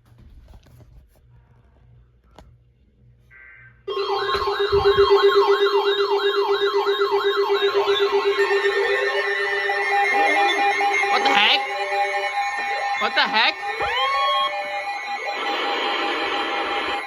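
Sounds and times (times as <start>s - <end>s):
electronic siren alarm warbling: 3.9s - 17.0s.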